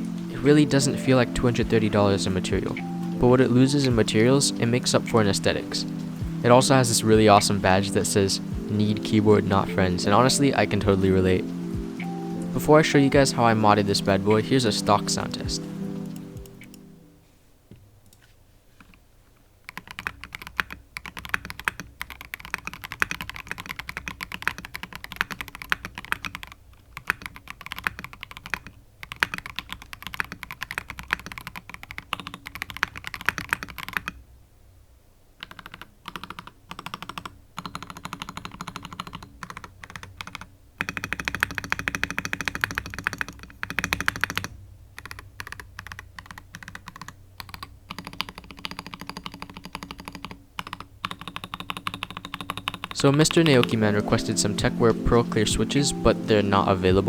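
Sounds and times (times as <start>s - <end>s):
mechanical keyboard typing: 19.6s - 34.2s, 35.4s - 54.7s.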